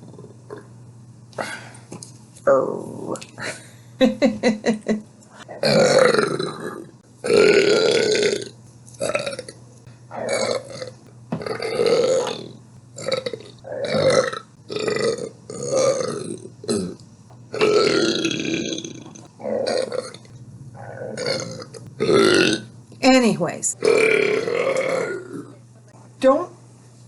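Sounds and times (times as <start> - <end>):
woman burping: 21.2 - 22.6, 23.8 - 25.6.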